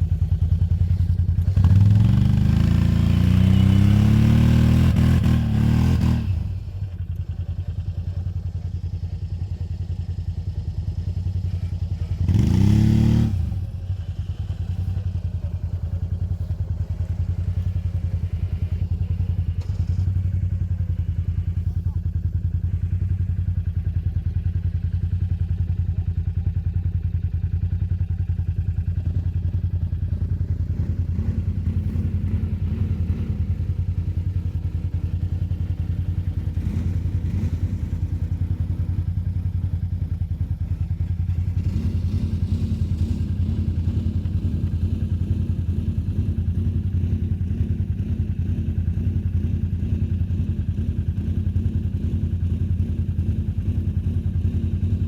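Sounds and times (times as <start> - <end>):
atv engine running: 0.0 - 55.0.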